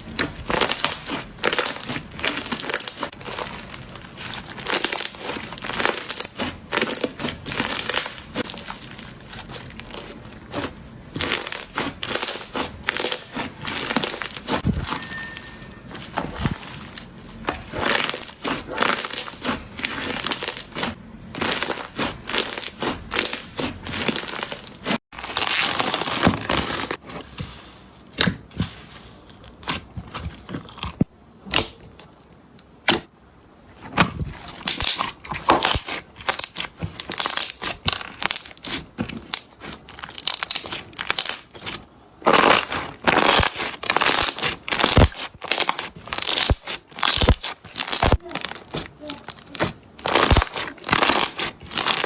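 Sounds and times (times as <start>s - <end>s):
slime squeezed with sticky pops: 33.9s - 52.0s.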